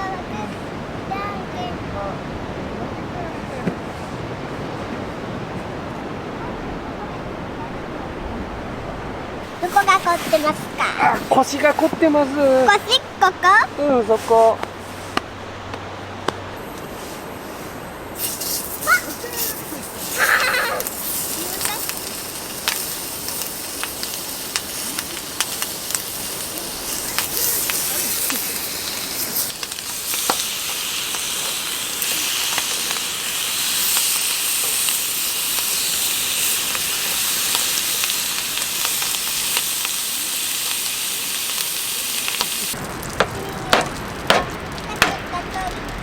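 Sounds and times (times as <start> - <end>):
food sizzling in a pan: 9.4 - 15.2, 16.6 - 45.8.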